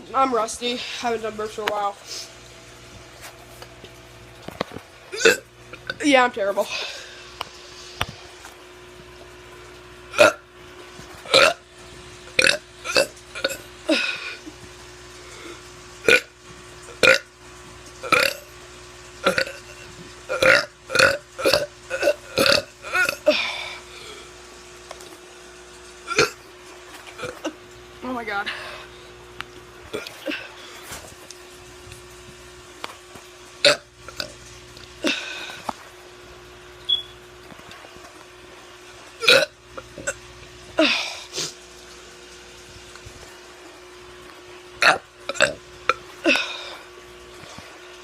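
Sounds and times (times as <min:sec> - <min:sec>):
person burping: 0:05.1 - 0:06.0, 0:10.1 - 0:10.5, 0:11.3 - 0:11.6, 0:12.4 - 0:14.5, 0:15.4 - 0:17.3, 0:18.0 - 0:18.5, 0:19.2 - 0:23.8, 0:26.1 - 0:26.4, 0:27.2 - 0:27.6, 0:29.9 - 0:30.5, 0:33.6 - 0:34.4, 0:39.2 - 0:40.2, 0:44.8 - 0:46.9.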